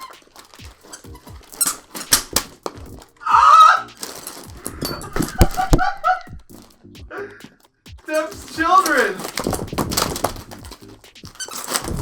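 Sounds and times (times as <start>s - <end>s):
squeaky toy squeaks: 0.0s - 4.2s, 8.4s - 12.0s
rubber toys knocking together: 0.0s - 12.0s.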